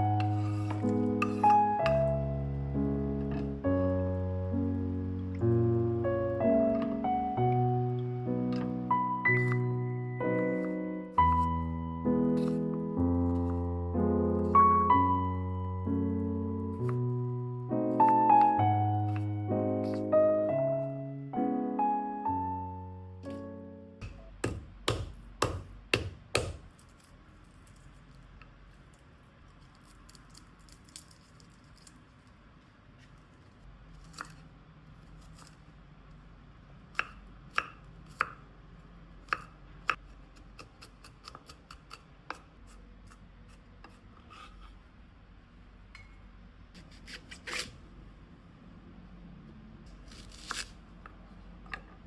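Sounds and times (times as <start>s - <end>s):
knife chopping on cutting board: 24.0s - 26.7s.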